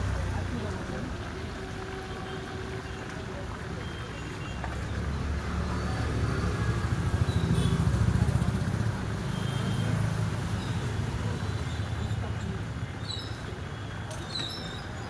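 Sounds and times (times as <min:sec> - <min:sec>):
passing vehicle engine rumble: 0:04.6 - 0:13.6.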